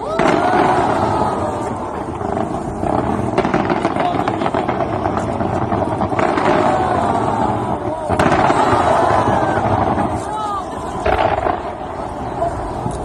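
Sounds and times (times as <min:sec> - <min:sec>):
fireworks crackling and popping: 0:00.0 - 0:13.0.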